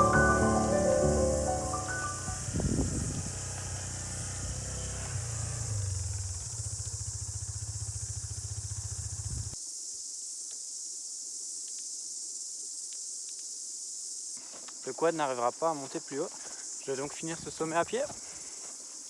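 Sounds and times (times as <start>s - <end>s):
insect chorus: 0.0s - 19.0s
quad bike engine running: 2.4s - 9.6s.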